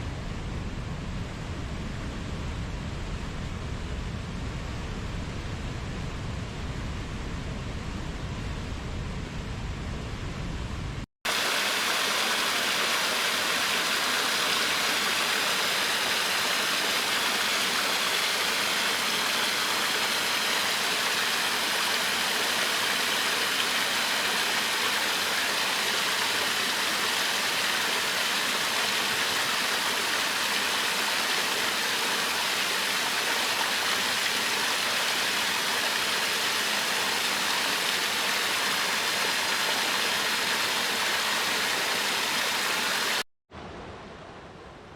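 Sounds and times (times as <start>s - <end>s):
flowing water rushing: 11.3s - 43.2s.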